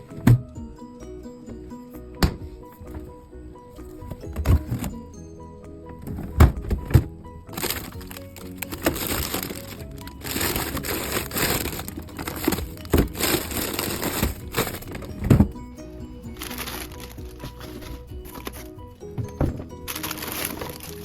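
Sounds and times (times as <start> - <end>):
background music: 0.0 - 21.0
packaging rustling and crinkling: 6.1 - 15.6, 16.3 - 21.0.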